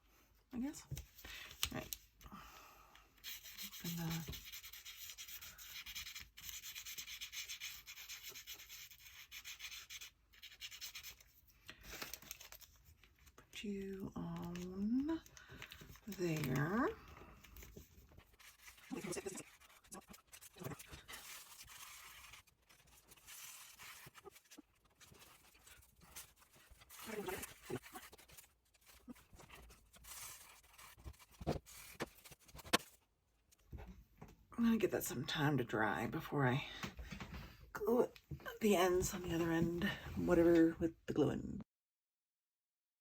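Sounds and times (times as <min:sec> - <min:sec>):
glue pen rubbing on paper: 0:03.2 - 0:11.4, 0:15.8 - 0:33.0.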